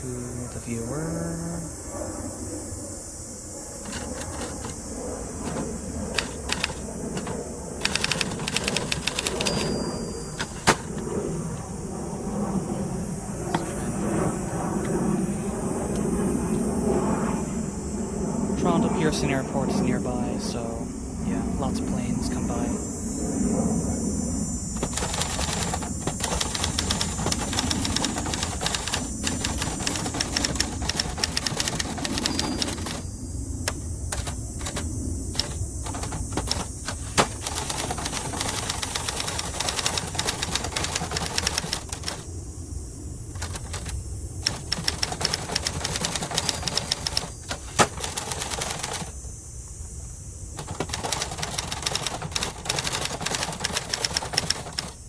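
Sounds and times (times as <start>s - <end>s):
manual typewriter key strikes: 3.9s - 4.8s, 5.4s - 11.0s, 24.8s - 33.1s, 33.7s - 42.3s, 43.3s - 49.2s, 50.6s - 55.0s.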